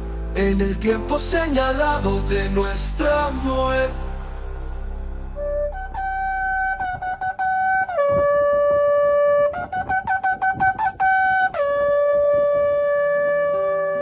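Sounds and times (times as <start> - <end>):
shofar blasts: 5.4 - 14.0.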